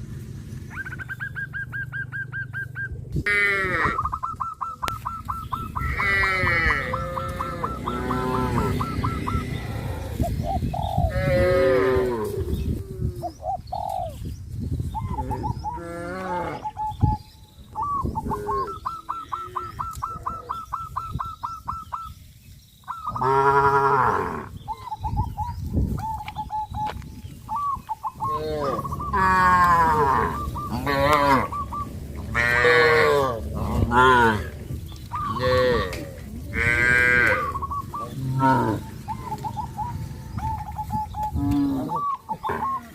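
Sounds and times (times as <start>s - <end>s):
cattle mooing: 3.3s - 4.0s, 5.8s - 10.3s, 11.1s - 12.6s, 28.3s - 40.7s, 41.3s - 42.9s.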